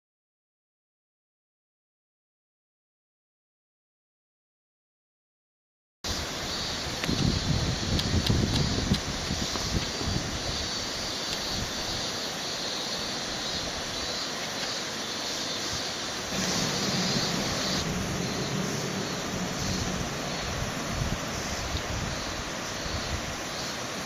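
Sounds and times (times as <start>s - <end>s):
rushing background noise: 6.1s - 24.0s
excavator diesel engine running: 16.3s - 21.3s.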